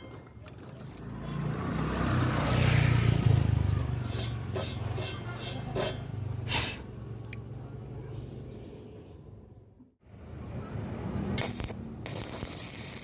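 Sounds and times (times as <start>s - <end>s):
scraping strokes on metal: 4.0s - 6.9s, 11.4s - 13.0s.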